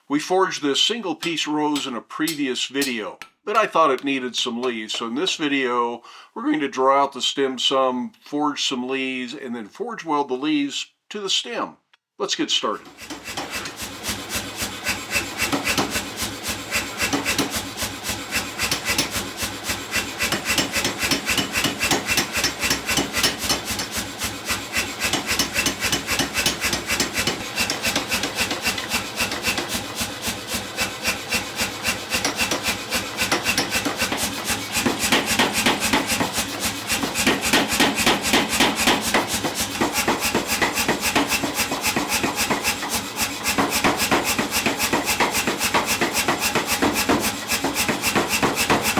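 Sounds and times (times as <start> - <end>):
hammer blows on hot iron: 14.7 - 48.9.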